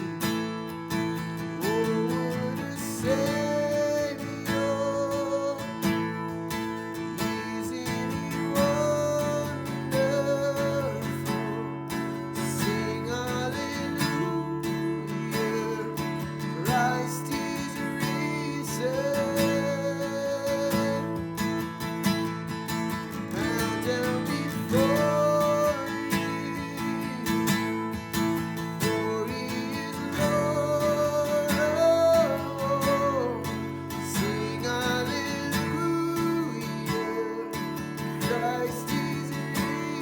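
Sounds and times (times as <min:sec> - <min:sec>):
acoustic guitar strumming chords: 0:00.0 - 0:40.0.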